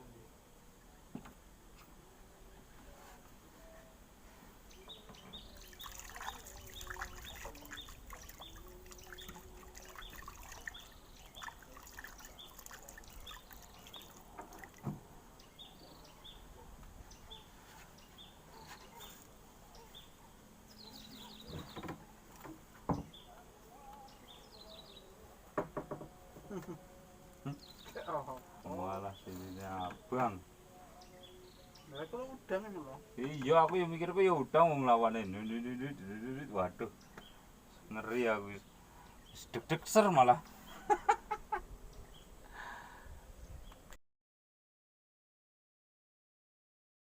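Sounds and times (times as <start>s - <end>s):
water trickling: 5.1s - 14.9s.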